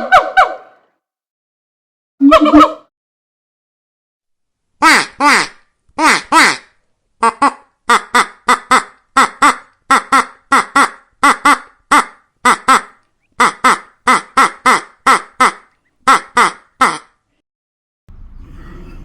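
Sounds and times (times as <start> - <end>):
duck quacking: 4.8 - 17.2.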